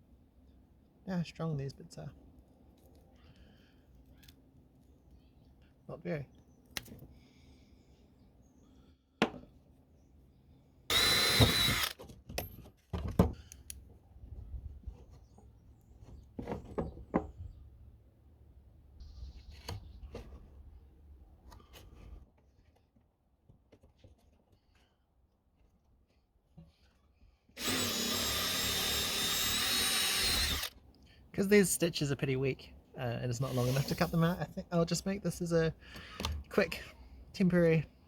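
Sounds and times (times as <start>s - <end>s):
small power tool whining: 10.9s - 12.0s, 27.6s - 30.8s, 33.5s - 34.3s.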